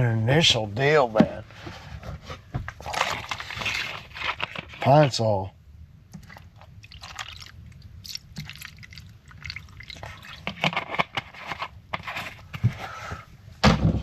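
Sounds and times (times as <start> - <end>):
liquid dripping and splashing: 6.1 - 10.6.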